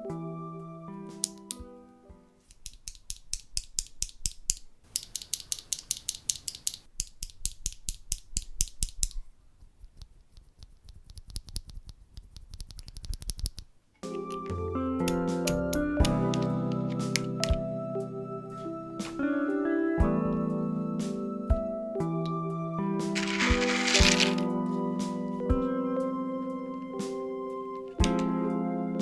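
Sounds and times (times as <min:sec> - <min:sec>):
keyboard switches clicking: 0:04.9 - 0:06.9.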